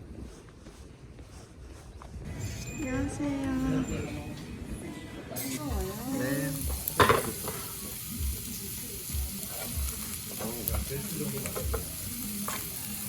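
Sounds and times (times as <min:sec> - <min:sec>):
soft background music with beat: 0:03.1 - 0:13.0
food sizzling in a pan: 0:05.3 - 0:13.0.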